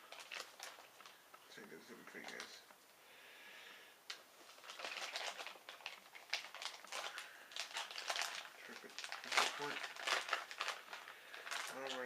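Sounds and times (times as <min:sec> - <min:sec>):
packaging crinkling: 0:00.0 - 0:01.4, 0:02.0 - 0:02.6, 0:04.1 - 0:12.0.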